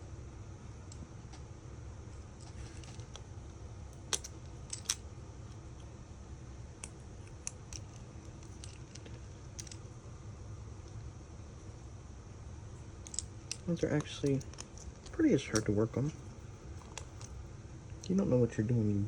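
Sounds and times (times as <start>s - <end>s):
steady low hum: 0.0s - 19.0s
small metal tools clicking: 4.0s - 5.0s, 6.8s - 9.8s, 13.0s - 16.1s.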